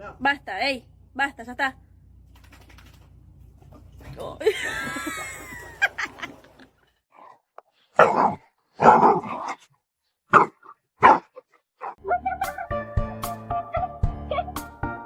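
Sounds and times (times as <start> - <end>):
dog barking: 8.0 - 9.6, 10.3 - 12.0.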